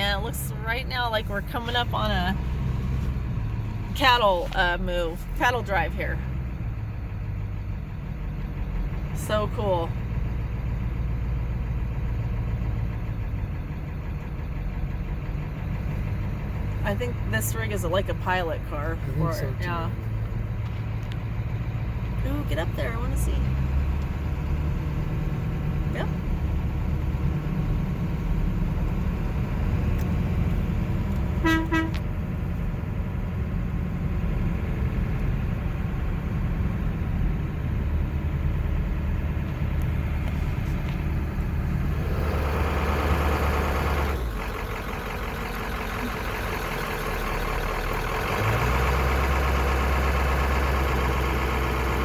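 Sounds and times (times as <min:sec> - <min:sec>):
vehicle engine and road rumble: 0:00.0 - 0:52.0
short horn toot: 0:31.4 - 0:32.0.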